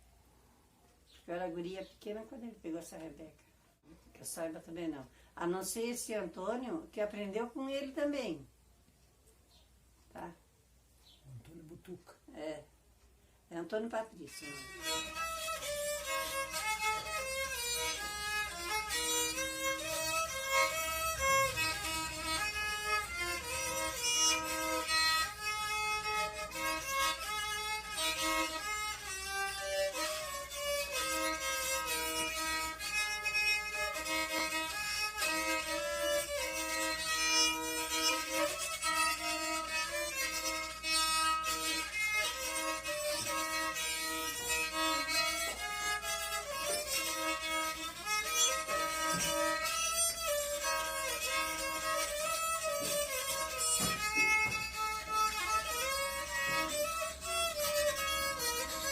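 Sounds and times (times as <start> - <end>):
bowed fiddle melody: 14.0 - 58.9.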